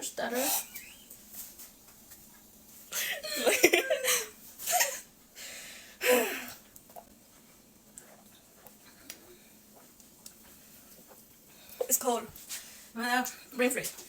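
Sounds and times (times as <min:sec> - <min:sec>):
giggling and laughter: 0:02.9 - 0:05.1.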